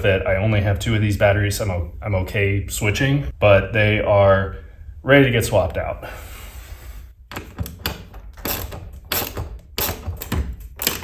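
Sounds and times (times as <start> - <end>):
tools clicking and knocking: 7.3 - 11.0.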